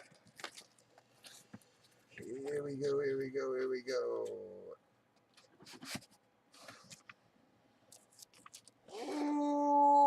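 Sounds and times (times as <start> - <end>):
man saying ooh in surprise: 8.9 - 10.0.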